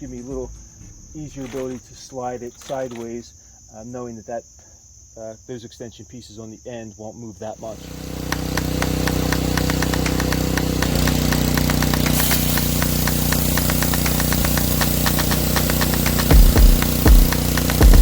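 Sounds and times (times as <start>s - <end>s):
pressure washer engine chugging: 0.0s - 2.7s, 7.6s - 18.0s
heavy low thumps: 16.2s - 18.0s.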